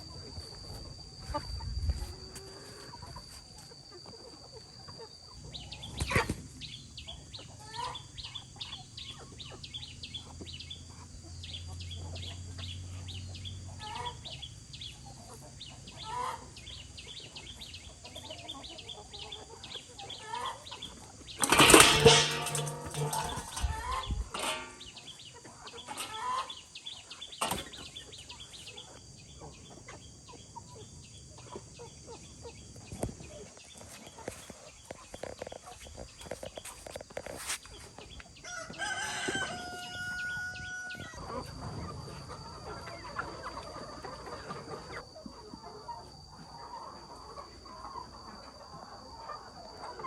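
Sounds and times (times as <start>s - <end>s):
chickens clucking: 0.0s - 50.0s
rooster crowing: 38.4s - 41.2s.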